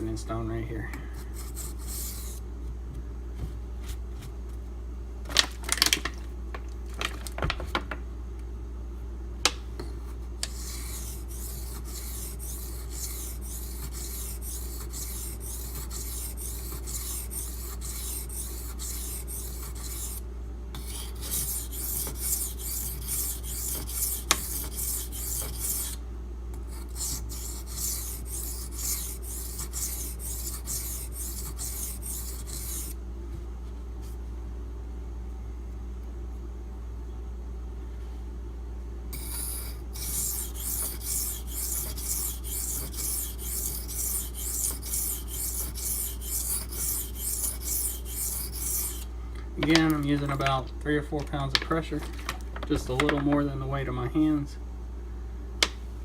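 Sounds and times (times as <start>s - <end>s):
knife scraping on whetstone: 10.4s - 20.2s, 20.8s - 26.0s, 26.6s - 33.0s, 39.2s - 49.1s.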